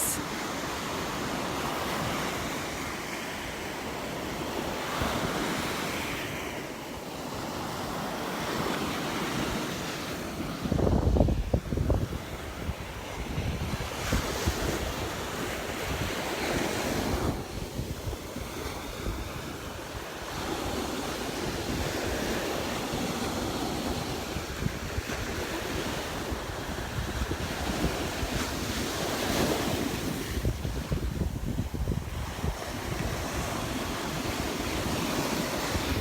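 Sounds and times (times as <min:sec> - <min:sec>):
small waves breaking on shore: 0:00.0 - 0:36.0
wind buffeting microphone: 0:10.5 - 0:23.1, 0:23.8 - 0:36.0.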